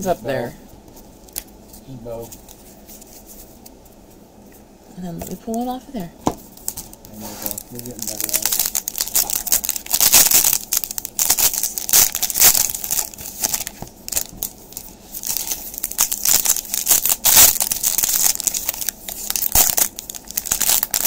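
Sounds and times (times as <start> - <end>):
plastic wrapper crinkling and tearing: 6.6 - 21.0.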